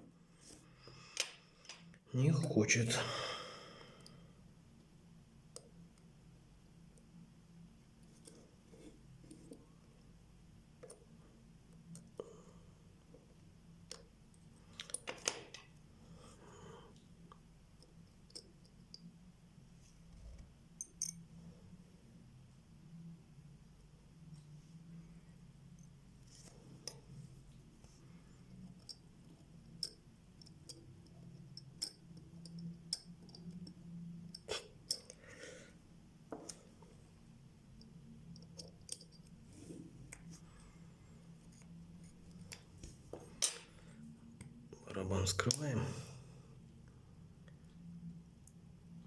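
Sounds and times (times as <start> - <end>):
low steady hum: 0.0 - 49.0
metal tools clicking on watch parts: 28.5 - 35.2, 37.8 - 39.4.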